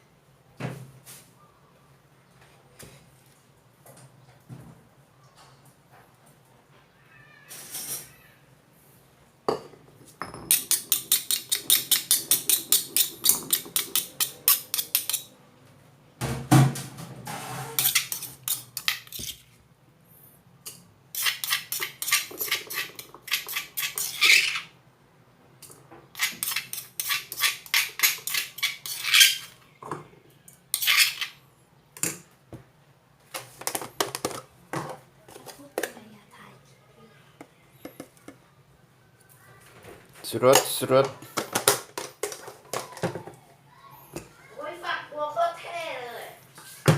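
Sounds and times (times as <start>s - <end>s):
scraping and clinking: 9.5s - 15.4s, 20.7s - 24.7s, 30.7s - 31.4s.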